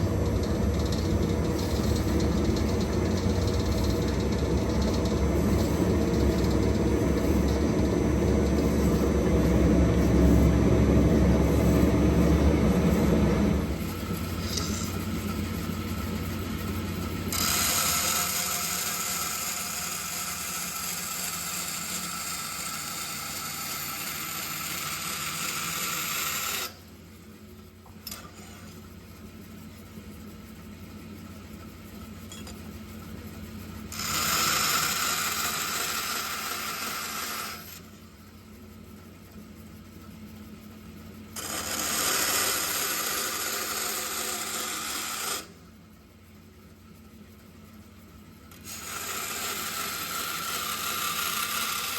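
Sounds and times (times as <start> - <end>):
band saw humming: 0.0 - 26.8, 33.8 - 37.8.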